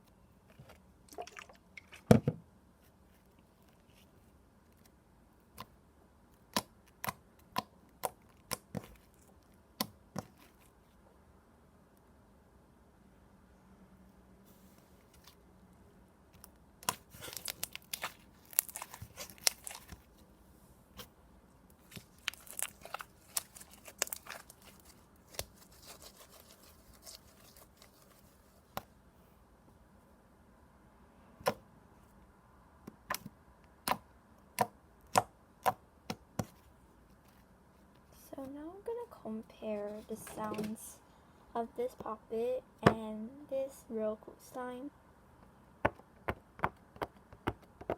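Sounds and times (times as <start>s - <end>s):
slime squishing with clicks and pops: 5.5s - 10.3s, 16.3s - 20.1s, 21.7s - 25.7s, 32.9s - 36.6s.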